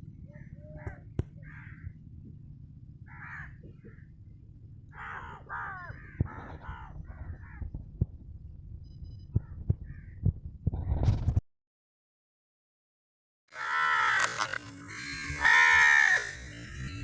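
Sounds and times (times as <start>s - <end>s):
steady low rumble: 0.0s - 11.4s
crow cawing: 0.3s - 2.0s, 3.0s - 4.2s, 4.9s - 7.7s, 9.4s - 10.2s, 13.5s - 16.8s.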